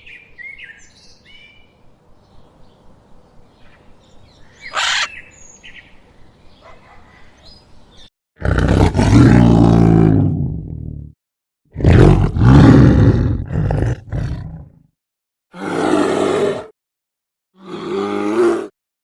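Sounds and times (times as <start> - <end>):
large animal deep calls: 4.7 - 5.1.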